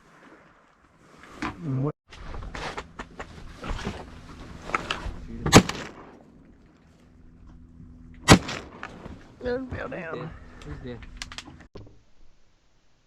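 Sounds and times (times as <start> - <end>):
rustling: 0.0 - 12.5
shotgun blasts: 5.4 - 6.2, 8.2 - 9.0
small clicks: 11.0 - 11.5.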